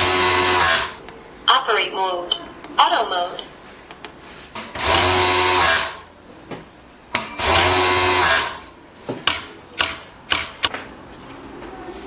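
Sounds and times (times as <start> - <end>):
overlock machine sewing: 4.7 - 6.0, 7.2 - 8.6
sharp mechanical clicks: 9.3 - 10.8.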